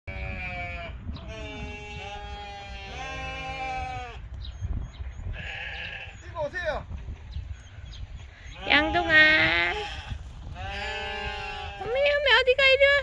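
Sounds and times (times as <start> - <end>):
lamb bleating: 0.1 - 4.2, 5.4 - 6.2, 8.6 - 12.1.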